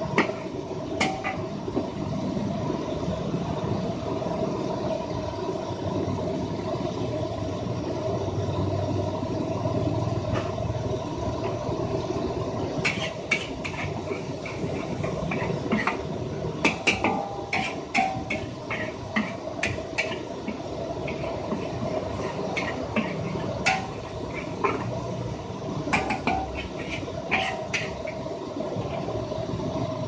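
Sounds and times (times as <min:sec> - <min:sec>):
metal spatula clanking in a wok: 0:00.0 - 0:01.6, 0:12.8 - 0:25.2, 0:25.8 - 0:29.1
rice sizzling: 0:00.0 - 0:08.2, 0:09.0 - 0:30.0
burner noise: 0:09.4 - 0:30.0.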